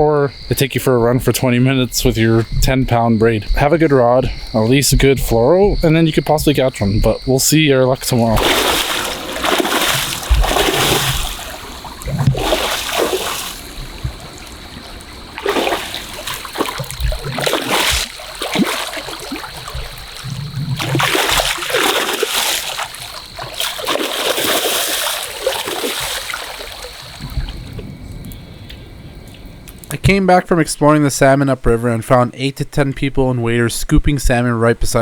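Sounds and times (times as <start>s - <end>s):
water splashing in river: 8.1s - 27.8s.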